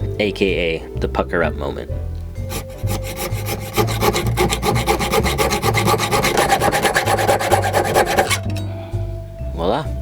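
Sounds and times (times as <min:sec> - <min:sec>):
hacksaw cutting metal: 0:02.5 - 0:08.6.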